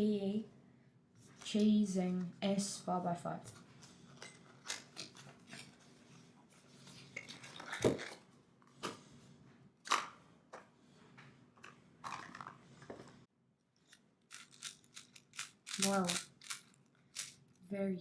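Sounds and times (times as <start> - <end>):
plastic packaging crinkling: 13.8 - 17.6
puzzle cube clicks: 14.3 - 17.4.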